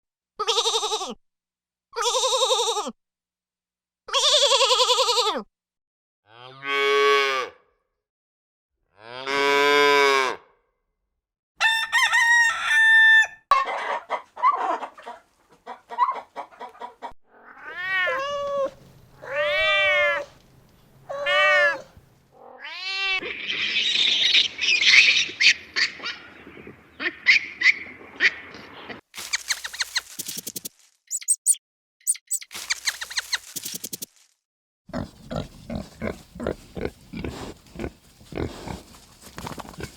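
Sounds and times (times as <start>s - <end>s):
animal bleating: 0.4s - 1.2s, 2.0s - 3.0s, 4.1s - 5.5s, 17.3s - 20.4s, 21.1s - 23.4s
rooster crowing: 11.6s - 14.0s
chickens clucking: 13.5s - 17.2s.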